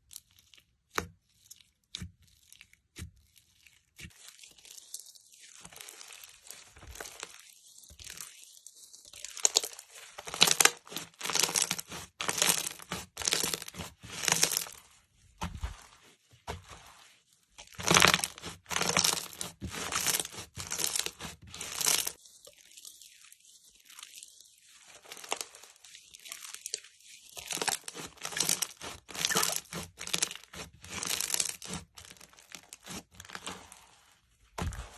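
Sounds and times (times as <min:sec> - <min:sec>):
slime squishing: 0:00.0 - 0:34.9
slime crackling and popping: 0:09.2 - 0:14.8, 0:17.6 - 0:23.1, 0:27.4 - 0:34.9.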